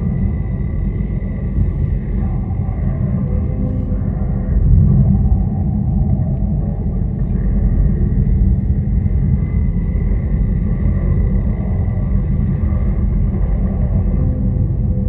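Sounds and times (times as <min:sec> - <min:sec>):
dark ambient drone: 0:00.0 - 0:15.0
low rumble: 0:00.0 - 0:15.0.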